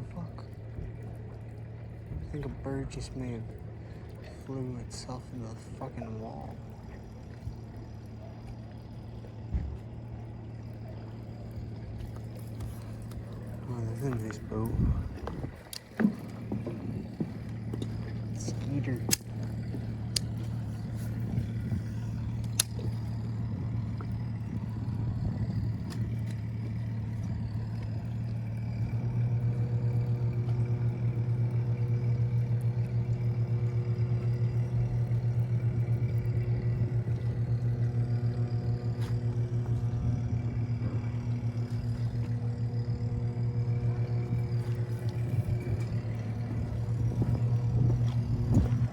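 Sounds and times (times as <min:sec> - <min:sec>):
boat motor humming: 0:00.0 - 0:48.9.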